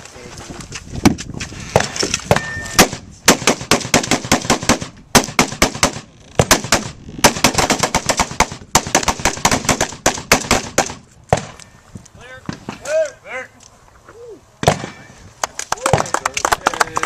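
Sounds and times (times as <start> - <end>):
rapid rifle fire: 2.8 - 11.5.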